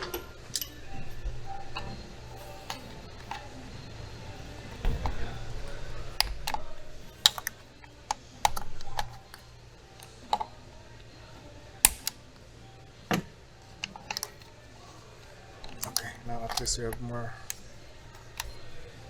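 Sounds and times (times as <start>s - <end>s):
plastic connectors clicking and snapping: 4.9s - 10.5s, 11.8s - 12.2s, 13.8s - 14.6s, 15.6s - 18.9s.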